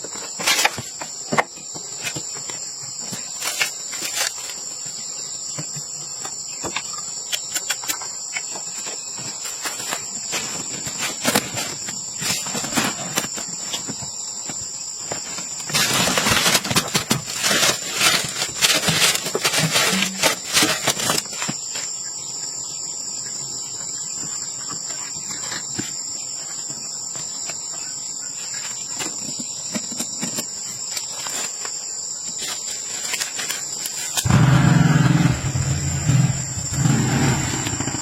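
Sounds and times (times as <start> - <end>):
crackling and rustling clicks: 0.0 - 4.7, 6.2 - 21.8, 28.9 - 34.3
insect chorus: 0.0 - 38.0.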